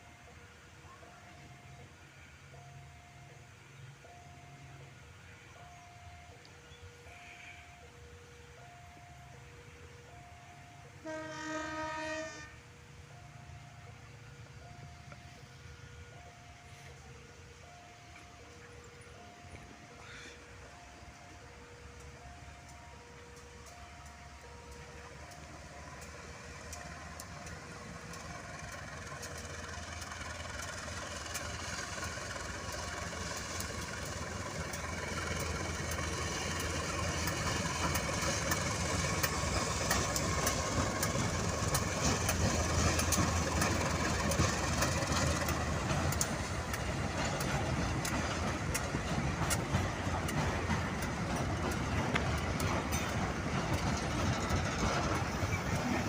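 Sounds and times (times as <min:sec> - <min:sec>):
train engine running: 0:00.0 - 0:56.0
wheels clicking on rails: 0:16.1 - 0:56.0.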